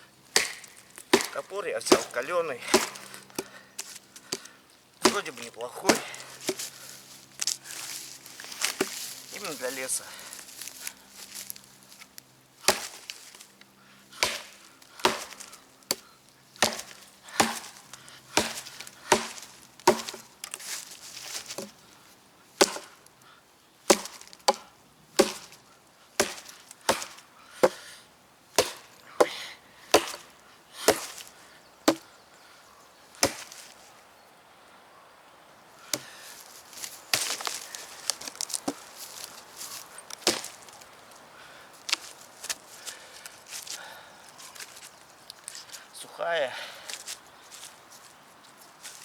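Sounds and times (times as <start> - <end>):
axe chopping wood: 0.3 - 6.8, 8.5 - 9.6, 12.6 - 13.2, 14.2 - 21.8, 22.6 - 23.1, 23.9 - 25.6, 26.2 - 28.0, 28.6 - 32.1, 33.2 - 33.7, 35.9 - 36.2, 36.8 - 39.3, 40.1 - 40.8.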